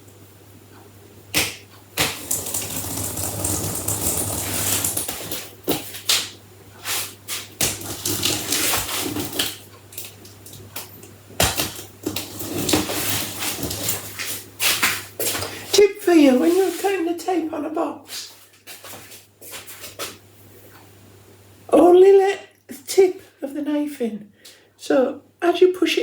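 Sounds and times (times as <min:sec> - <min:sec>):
knife slicing packing tape: 0:01.4 - 0:06.3, 0:07.3 - 0:09.6
tape tearing: 0:02.0 - 0:06.3, 0:07.6 - 0:09.6.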